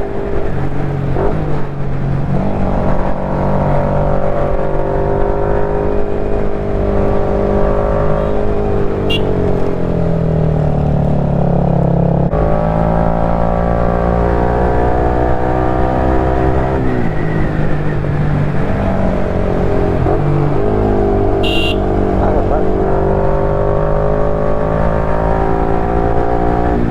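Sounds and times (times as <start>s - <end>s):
motorcycle engine running: 6.4s - 12.3s, 18.1s - 22.7s.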